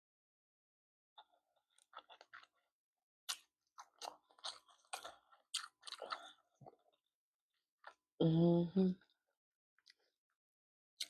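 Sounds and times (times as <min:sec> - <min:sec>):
crunching and clicking of seafood: 0:01.2 - 0:02.6, 0:03.3 - 0:06.9.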